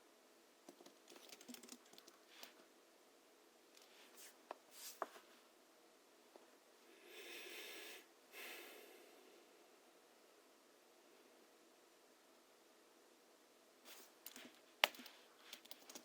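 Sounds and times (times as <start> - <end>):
keyboard typing clicks: 0.7 - 2.2, 14.3 - 16.0
soft breaths: 6.8 - 9.9.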